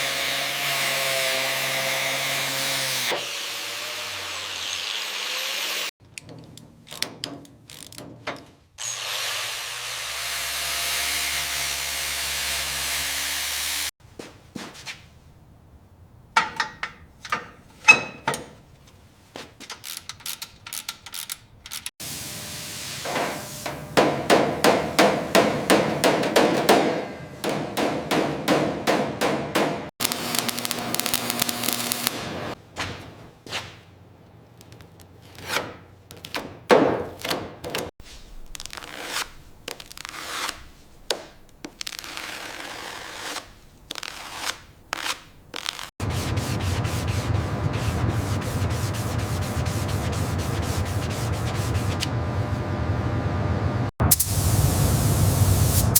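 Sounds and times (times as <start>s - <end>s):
hammer blows: 23.0s - 33.0s
burst of hissing: 54.0s - 55.9s.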